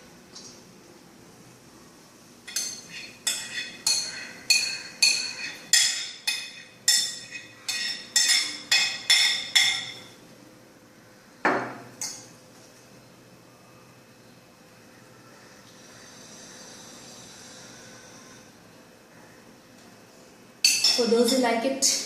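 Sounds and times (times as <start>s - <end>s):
utensils clinking on dish: 2.5s - 10.1s, 20.6s - 21.3s.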